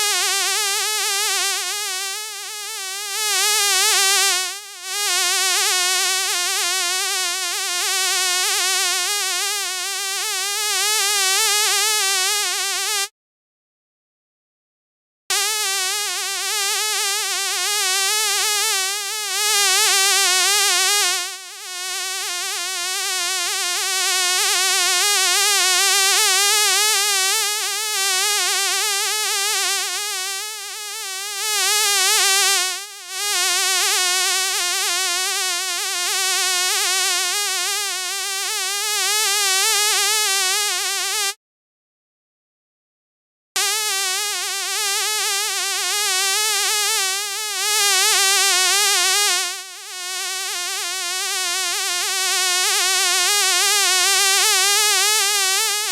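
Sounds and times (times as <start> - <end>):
fly buzzing: 10.2 - 13.1, 15.3 - 41.4, 43.6 - 52.2.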